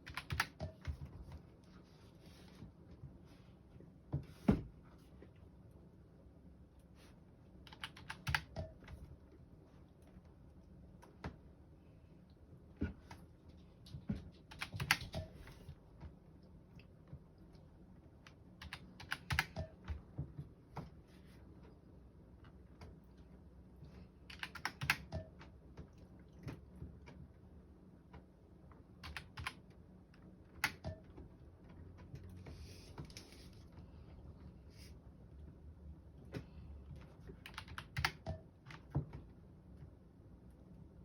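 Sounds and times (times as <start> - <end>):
typing on computer keyboard: 0.0 - 1.0, 7.6 - 9.1, 14.3 - 15.6, 18.2 - 20.0, 24.2 - 25.6, 29.0 - 29.7, 37.3 - 39.0.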